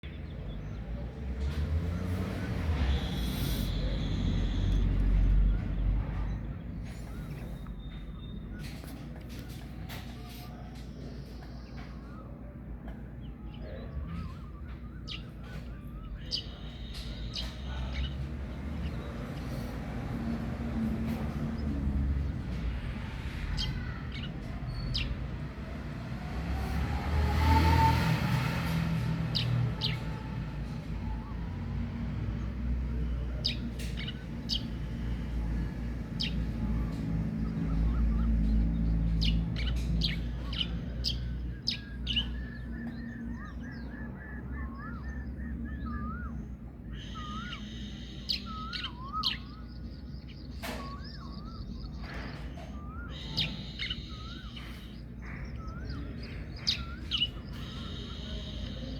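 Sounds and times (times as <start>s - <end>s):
birds chirping: 0.0s - 58.9s
wavering bird whistles: 40.4s - 50.0s, 50.6s - 58.9s.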